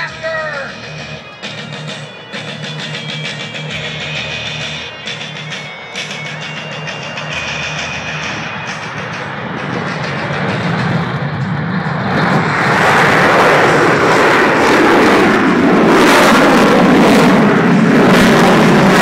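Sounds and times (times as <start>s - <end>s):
jet engine roar: 0.0s - 19.0s.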